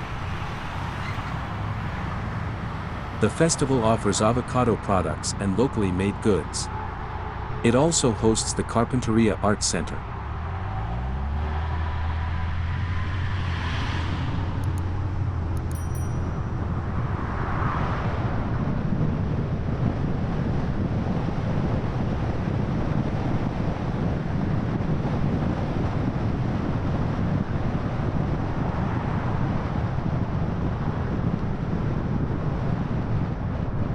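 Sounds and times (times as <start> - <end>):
low rumble of road noise: 0.0 - 33.9
vehicles passing: 0.0 - 33.9
vehicle engine speeding up: 9.8 - 15.7.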